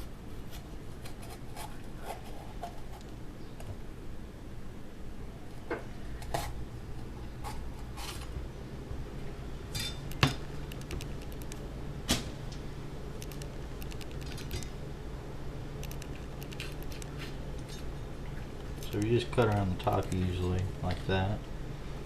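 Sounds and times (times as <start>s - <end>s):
low hum: 3.3s - 22.0s.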